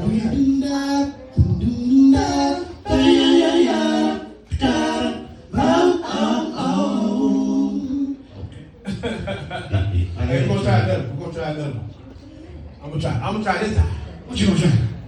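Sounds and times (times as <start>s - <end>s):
voices singing in harmony: 0.0s - 8.4s.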